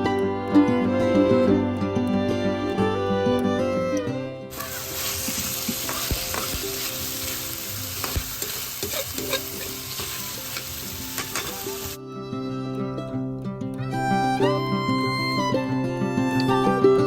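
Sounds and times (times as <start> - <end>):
food sizzling in hot oil: 4.5 - 12.0.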